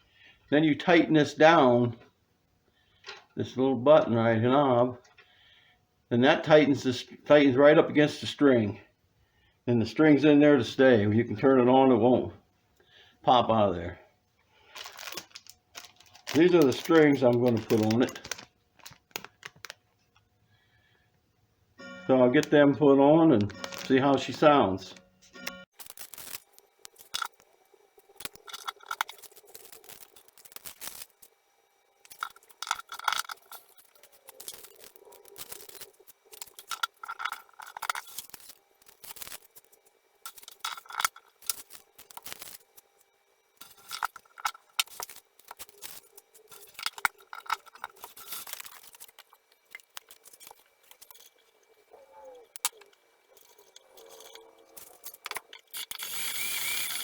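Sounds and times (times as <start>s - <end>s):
guitar strings and parts handled: 14.8s - 19.5s, 23.4s - 24.4s, 25.4s - 27.4s, 28.2s - 31.3s, 32.0s - 42.8s, 43.6s - 51.6s, 52.5s - 57.0s.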